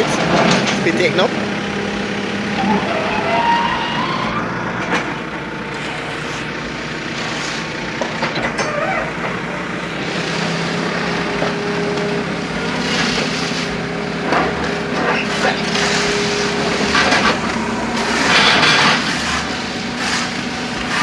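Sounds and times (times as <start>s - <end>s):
heavy vehicle engine running: 0.0s - 21.0s
sharp clanks and knocks: 0.1s - 1.2s.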